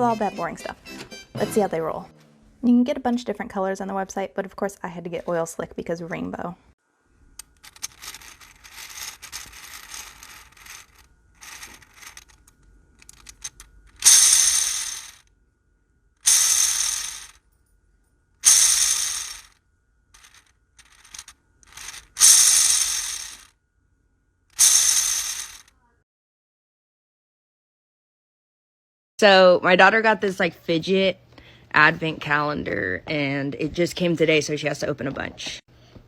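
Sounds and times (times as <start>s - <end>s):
spinner ratcheting whir: 7.4s - 15.3s, 16.2s - 17.4s, 18.4s - 19.6s, 20.2s - 23.6s, 24.5s - 25.7s
dice clicking and rattling: 7.6s - 15.2s, 16.3s - 17.4s, 18.4s - 19.5s, 20.2s - 23.5s, 24.6s - 25.7s.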